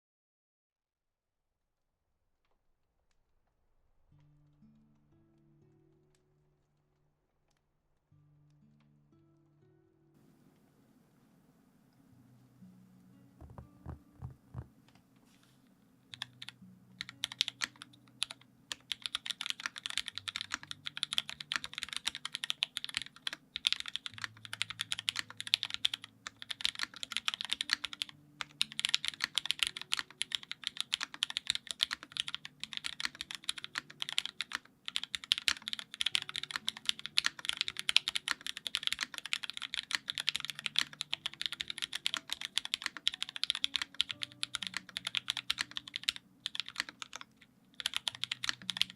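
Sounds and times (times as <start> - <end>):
mechanical keyboard typing: 13.4 - 14.7, 16.1 - 48.9.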